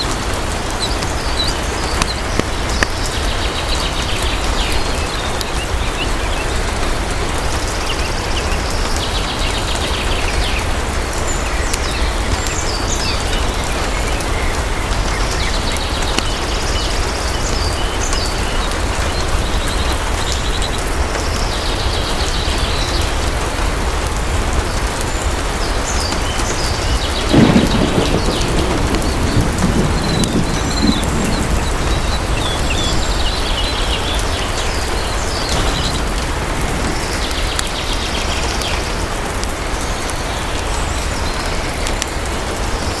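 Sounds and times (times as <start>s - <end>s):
heavy rain pouring: 23.6s - 43.0s
thunder rumbling: 26.6s - 39.0s.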